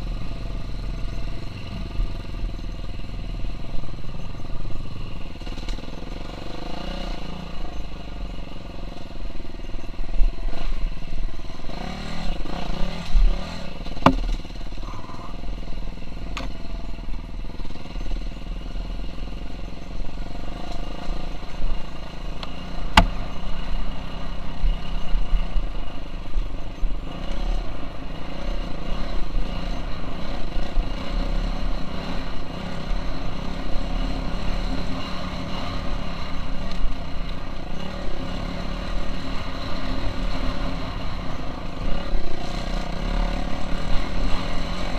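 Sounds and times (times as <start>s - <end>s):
dirt bike engine revving: 10.5s - 16.2s, 27.1s - 44.9s
sharp knocks: 14.0s - 14.4s, 22.9s - 23.2s.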